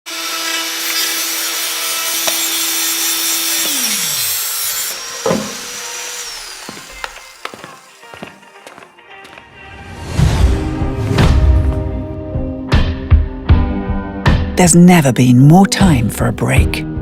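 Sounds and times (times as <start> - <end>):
oscillating multi-tool cutting wood: 0.1 - 8.8
knock: 5.2 - 5.8.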